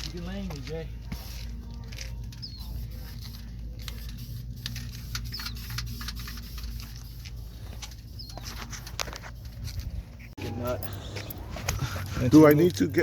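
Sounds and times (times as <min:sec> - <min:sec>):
bird chirping: 0:02.4 - 0:02.9, 0:05.3 - 0:05.8, 0:08.1 - 0:08.8.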